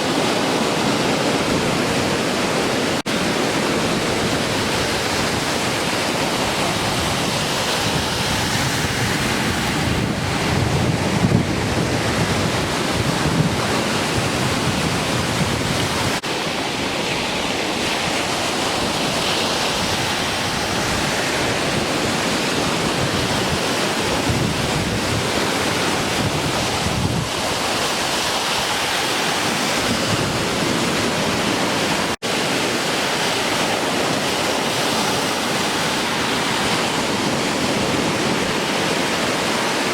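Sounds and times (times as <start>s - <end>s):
wind buffeting microphone: 0.0s - 32.1s
ocean surf washing in: 0.0s - 39.9s.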